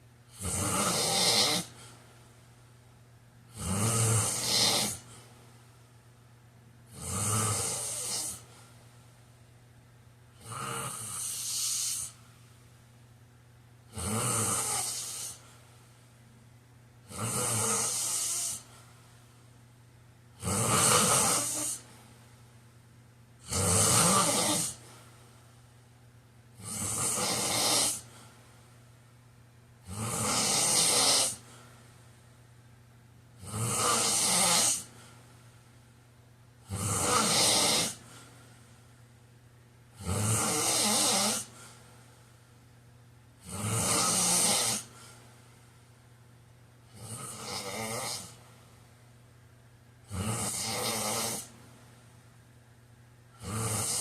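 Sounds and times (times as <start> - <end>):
faint steady low hum: 0.0 - 54.0
man snoring: 0.3 - 1.8, 3.5 - 5.1, 6.9 - 8.5, 10.4 - 12.2, 13.9 - 15.4, 17.1 - 18.7, 20.4 - 21.9, 23.4 - 24.8, 26.6 - 28.1, 29.8 - 31.4, 33.4 - 34.9, 36.6 - 38.1, 40.0 - 41.6, 43.4 - 44.9, 46.9 - 48.4, 50.1 - 51.5, 53.4 - 54.0.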